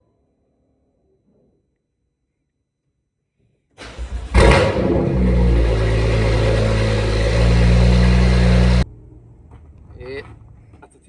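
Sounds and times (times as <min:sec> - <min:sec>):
car engine running loud: 0:04.0 - 0:08.8.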